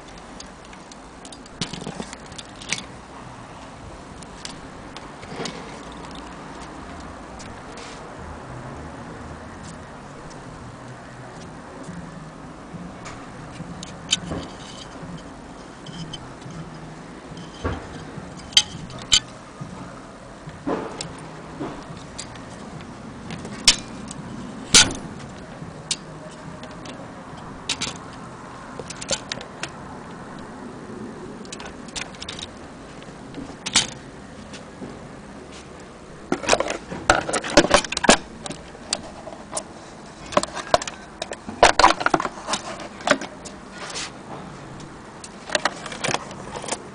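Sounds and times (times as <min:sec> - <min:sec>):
small metal mechanism clicking: 0:13.8 - 0:19.4, 0:21.8 - 0:28.2, 0:28.8 - 0:30.5.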